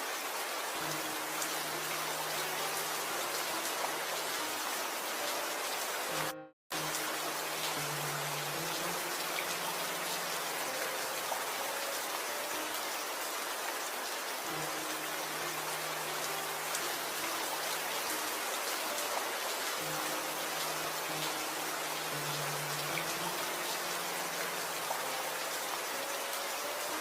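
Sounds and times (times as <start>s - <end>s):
steady rain falling: 0.0s - 27.0s.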